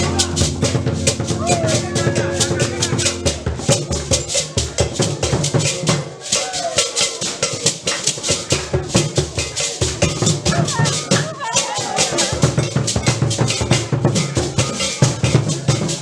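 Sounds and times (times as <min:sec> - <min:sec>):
deep drum beats: 0:00.0 - 0:06.2
lively music: 0:00.0 - 0:16.0
shaker rattle beat: 0:00.0 - 0:16.0.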